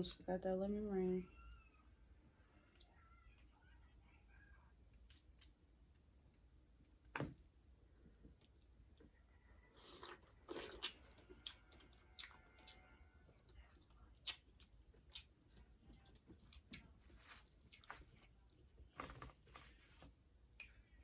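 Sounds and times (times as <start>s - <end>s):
person chewing food: 8.4s - 18.6s.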